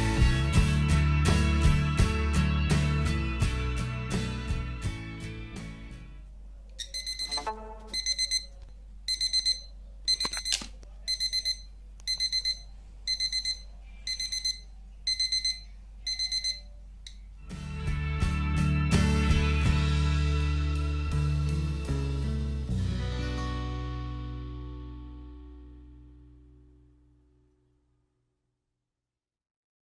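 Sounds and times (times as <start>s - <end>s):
fire alarm buzzer beeping: 6.8s - 16.7s.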